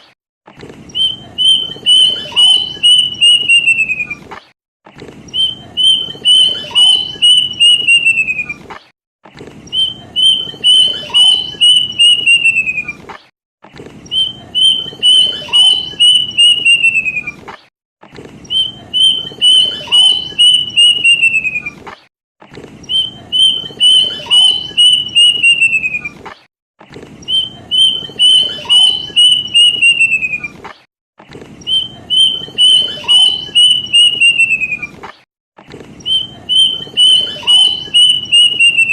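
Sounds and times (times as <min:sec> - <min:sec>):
cuckoo whistled song: 0:00.9 - 0:04.3, 0:05.3 - 0:08.6, 0:09.7 - 0:13.0, 0:14.1 - 0:17.4, 0:18.5 - 0:21.8, 0:22.8 - 0:26.2, 0:27.2 - 0:30.6, 0:31.6 - 0:35.0, 0:36.0 - 0:38.9.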